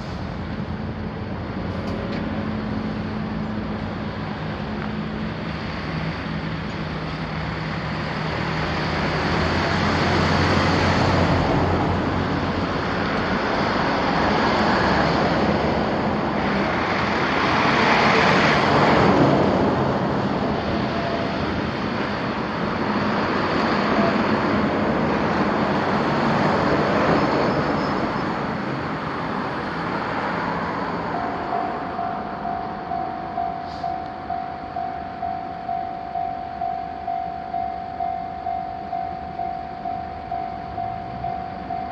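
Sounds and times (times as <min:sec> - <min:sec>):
vehicles passing over crossing: 0:00.0 - 0:41.9
crossing alarm pulsing ringing: 0:31.0 - 0:41.9.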